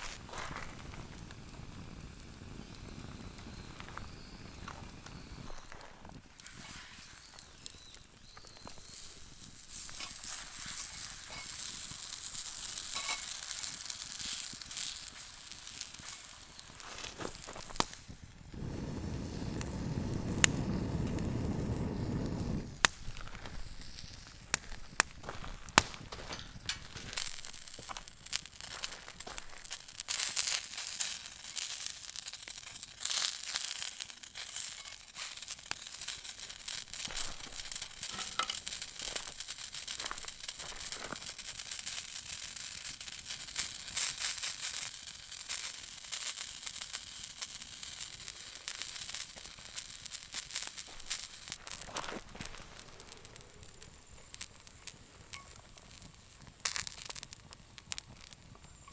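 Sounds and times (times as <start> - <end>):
campfire crackling and popping: 0.0 - 58.9
low rumbling noise: 18.5 - 23.5.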